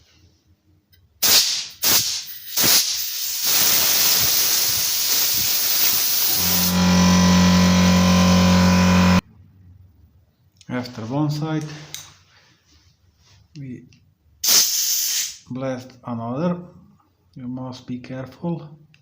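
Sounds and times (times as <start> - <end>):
compressed air blasting: 1.2 - 9.2, 14.4 - 15.4
steady low hum: 6.3 - 10.0.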